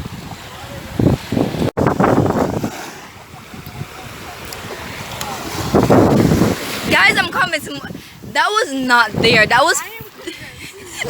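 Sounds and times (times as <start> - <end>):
surf: 0.0 - 11.0
wind buffeting microphone: 0.0 - 11.0.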